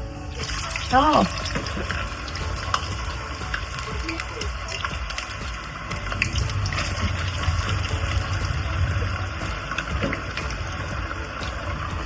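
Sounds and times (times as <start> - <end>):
chips sizzling in hot oil: 0.2 - 12.0
low rumble: 6.0 - 11.8.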